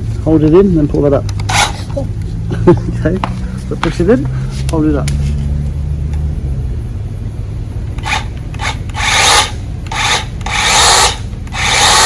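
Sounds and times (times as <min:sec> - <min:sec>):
electric chainsaw rasping bursts: 0:08.0 - 0:12.0.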